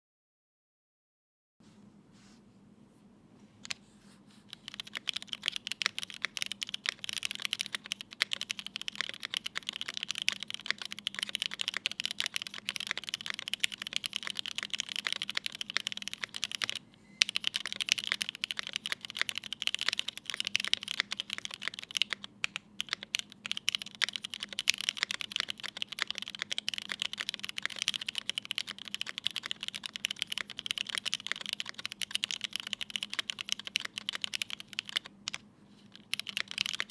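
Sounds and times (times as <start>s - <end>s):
fast mechanical keyboard typing: 4.5s - 36.9s.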